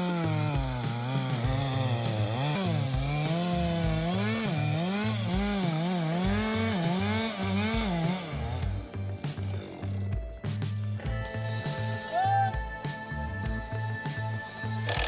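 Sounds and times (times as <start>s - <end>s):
chainsaw cutting wood: 0.0s - 10.4s, 14.2s - 15.0s.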